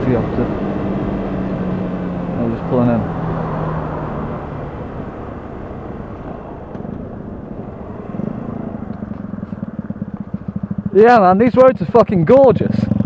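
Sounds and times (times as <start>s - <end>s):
motorcycle engine idling: 4.6s - 13.0s.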